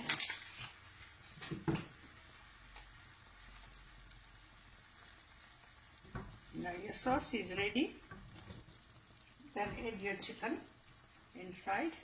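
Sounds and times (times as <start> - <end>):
sauce sizzling faintly: 0.0 - 12.0.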